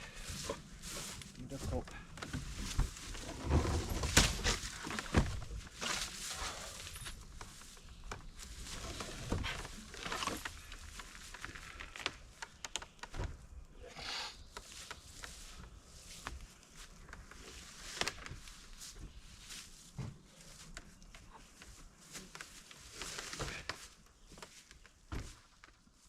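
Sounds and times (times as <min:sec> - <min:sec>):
rustling: 0:00.0 - 0:13.5.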